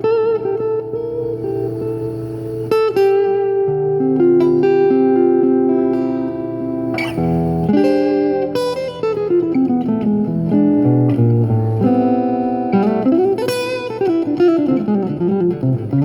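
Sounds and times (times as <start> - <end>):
acoustic guitar strumming and picking: 0.0 - 16.0.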